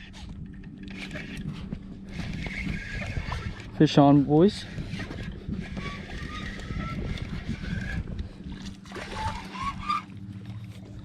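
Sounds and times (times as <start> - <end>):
water sloshing: 0.0 - 11.0
fishing reel squeaking: 0.8 - 8.2, 9.0 - 10.3.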